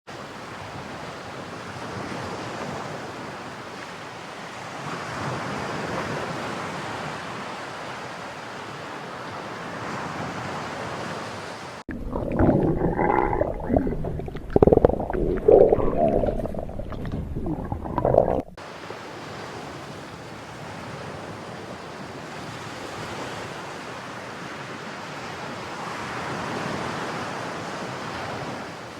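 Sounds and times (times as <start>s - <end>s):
stomach growling: 11.9s - 18.6s.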